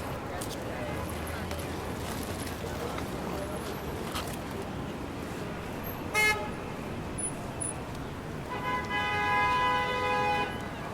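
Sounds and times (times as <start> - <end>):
horn honking: 8.5 - 10.6.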